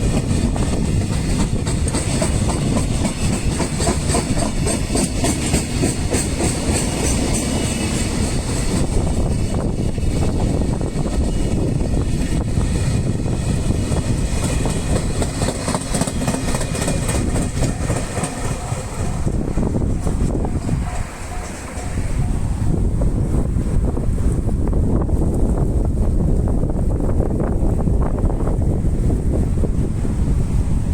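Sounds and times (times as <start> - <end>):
wheels clicking over rail joints: 0.0 - 23.1
freight wagons rumbling: 0.0 - 30.9.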